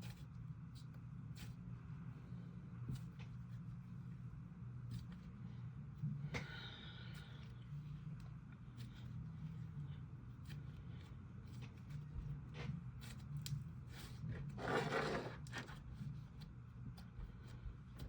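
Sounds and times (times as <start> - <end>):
hands squishing clay slime: 4.8 - 14.6.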